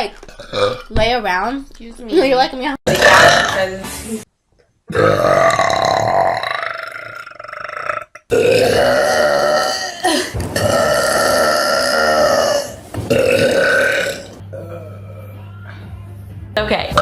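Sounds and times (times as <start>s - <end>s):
girl burping: 0.0s - 0.9s, 2.9s - 3.7s, 4.9s - 15.3s.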